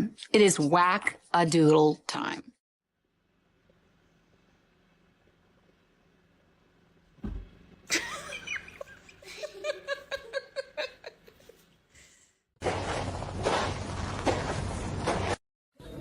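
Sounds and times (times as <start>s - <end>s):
knock: 7.2s - 7.5s
person laughing: 7.9s - 11.6s.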